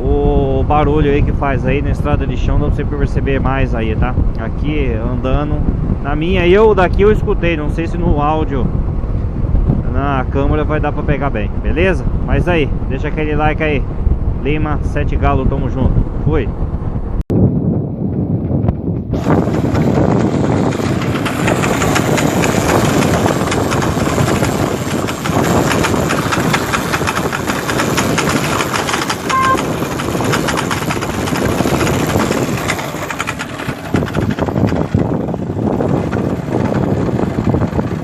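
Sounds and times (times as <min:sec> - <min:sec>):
motorcycle engine running: 0:15.9 - 0:38.0
rattling clutch noise: 0:16.6 - 0:38.0
short beep: 0:29.3 - 0:29.7.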